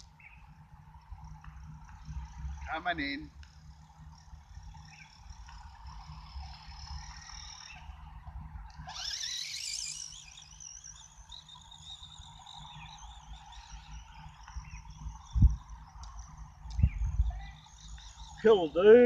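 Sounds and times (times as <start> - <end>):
electric motor whining: 0.0 - 19.0
wind on microphone: 16.7 - 17.5.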